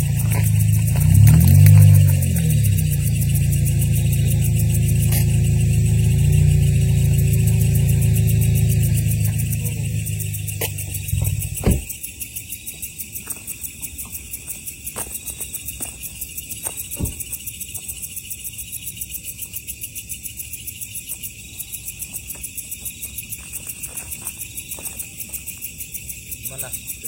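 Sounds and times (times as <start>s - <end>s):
crickets chirping: 0.0s - 27.0s
dull thumps: 10.4s - 12.0s, 16.8s - 17.4s.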